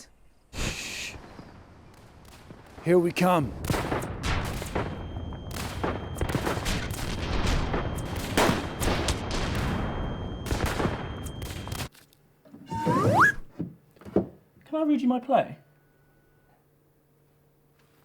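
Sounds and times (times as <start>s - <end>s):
faint high steady tone: 15.6s - 16.6s.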